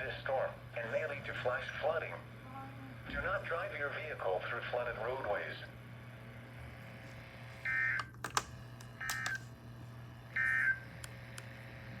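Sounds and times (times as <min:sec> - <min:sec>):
low steady hum: 0:00.0 - 0:12.0
sharp clicks: 0:08.0 - 0:09.5.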